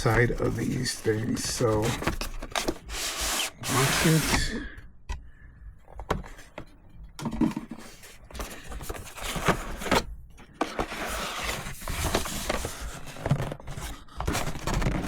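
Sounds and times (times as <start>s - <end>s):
packaging rustling and sliding: 0.0s - 4.6s, 7.8s - 15.0s
packaging scraping and clicking: 0.0s - 4.6s, 7.8s - 15.0s.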